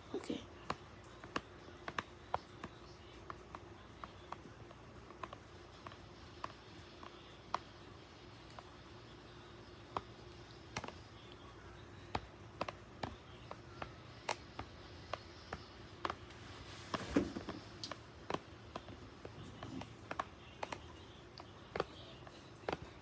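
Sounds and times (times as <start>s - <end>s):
toothbrush tapping on gel: 0.6s - 7.7s.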